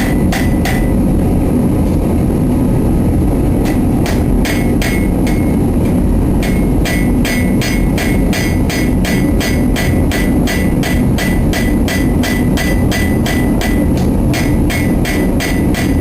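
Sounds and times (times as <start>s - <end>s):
hammer striking metal on anvil: 0.0s - 1.0s, 3.6s - 5.6s, 6.4s - 16.0s
low rumble: 0.0s - 16.0s.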